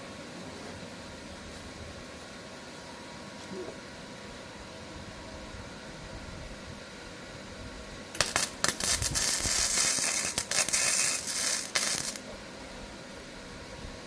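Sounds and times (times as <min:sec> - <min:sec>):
welding arc crackling and hissing: 0:08.1 - 0:12.3.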